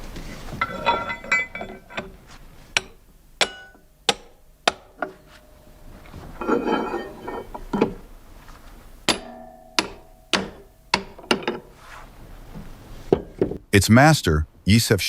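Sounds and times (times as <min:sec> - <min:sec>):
hand tools knocking and clinking: 0:00.6 - 0:08.1, 0:09.0 - 0:11.8, 0:13.1 - 0:13.6
rough scraping: 0:05.1 - 0:08.9, 0:11.6 - 0:13.1.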